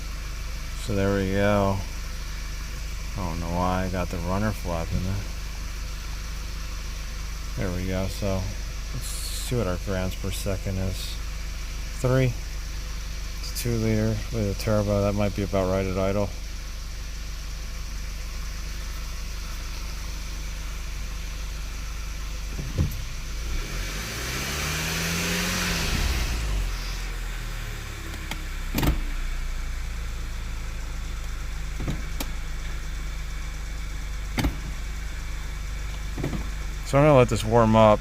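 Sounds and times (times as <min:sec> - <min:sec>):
car engine idling: 0:00.0 - 0:38.0
hiss with rising and falling tone: 0:21.6 - 0:29.2.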